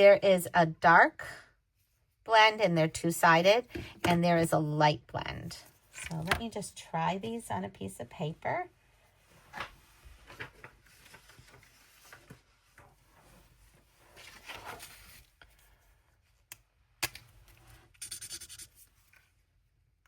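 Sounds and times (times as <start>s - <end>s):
paper rustling: 9.5s - 15.8s.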